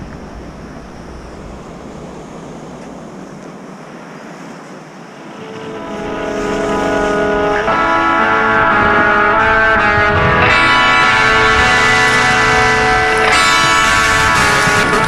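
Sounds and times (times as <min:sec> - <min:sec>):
ocean surf: 0:00.0 - 0:15.0
wind: 0:00.0 - 0:15.0
guitar music: 0:05.2 - 0:15.0.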